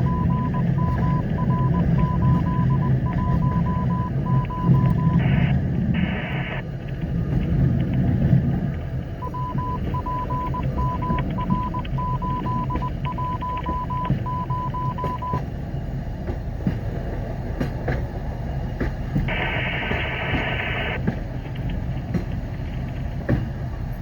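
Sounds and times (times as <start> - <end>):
short electronic beeps: 0.0 - 6.6, 9.2 - 15.4
rail vehicle rumble: 0.0 - 24.0.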